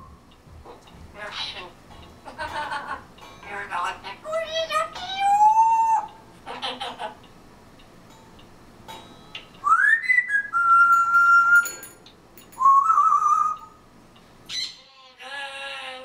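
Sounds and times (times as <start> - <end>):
parrot whistling: 9.6 - 11.8, 12.6 - 13.8.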